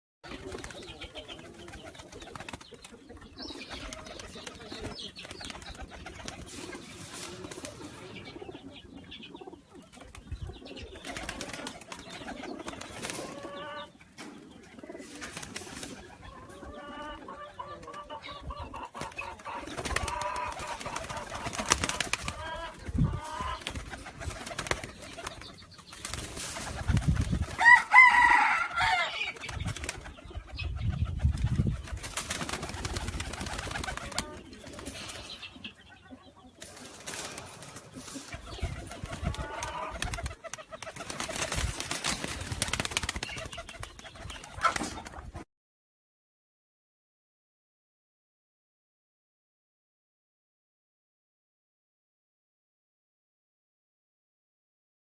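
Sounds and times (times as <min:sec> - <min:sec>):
wings flapping: 0:00.3 - 0:08.1, 0:09.8 - 0:16.3, 0:18.7 - 0:35.5, 0:36.6 - 0:45.4
pigeons cooing: 0:00.3 - 0:45.4.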